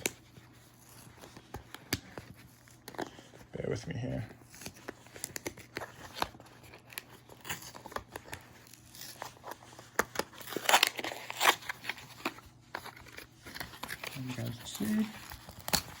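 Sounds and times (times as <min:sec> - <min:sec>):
paper packaging crinkling: 0:04.4 - 0:16.0.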